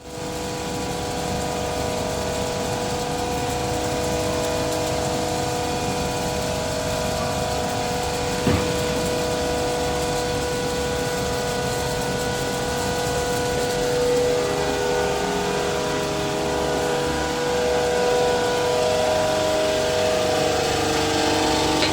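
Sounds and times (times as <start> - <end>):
compressors humming: 5.0 - 11.4, 13.7 - 21.9.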